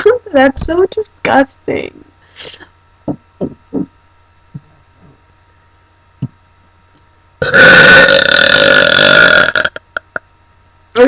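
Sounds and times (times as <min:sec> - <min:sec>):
woman making soft sounds: 0:02.4 - 0:04.0
loud burp: 0:07.4 - 0:10.2.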